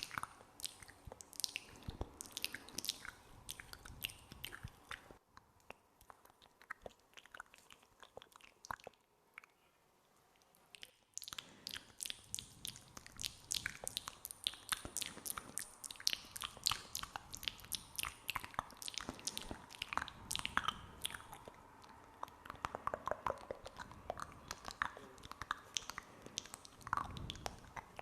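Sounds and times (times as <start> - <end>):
wet mouth clicks and smacks: 0.0 - 9.6, 10.4 - 28.0.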